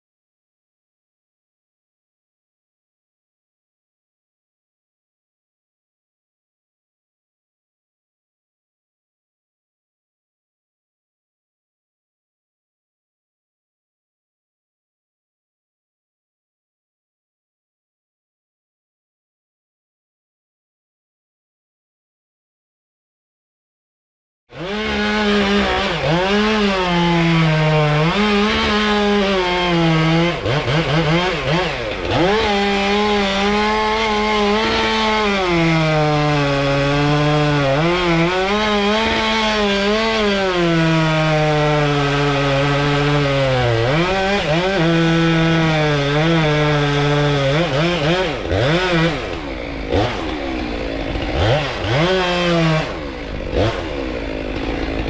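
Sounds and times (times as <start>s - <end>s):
chainsaw cutting wood: 24.5s - 55.0s.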